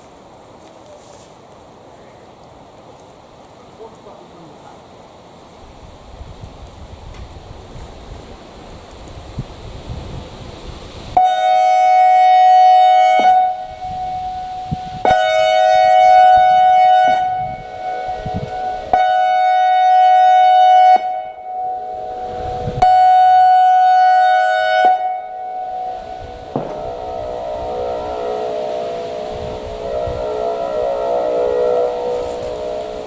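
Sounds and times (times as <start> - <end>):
warning siren blasts: 11.2 - 33.0.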